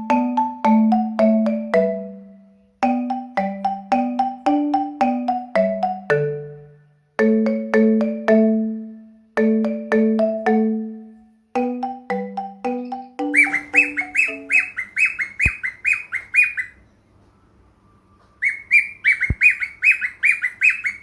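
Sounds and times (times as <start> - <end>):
light tune of struck notes: 12.7 - 15.7.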